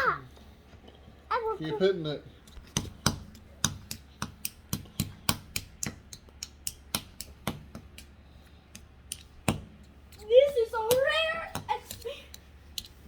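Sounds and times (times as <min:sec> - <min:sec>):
hammer tapping on toy egg: 0:02.6 - 0:09.9, 0:10.8 - 0:12.9.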